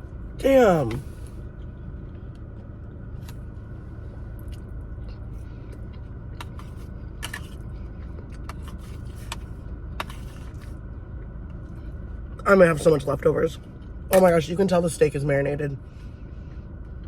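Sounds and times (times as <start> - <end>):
car cabin hum: 0.0 - 17.0
person chewing food: 4.2 - 10.8.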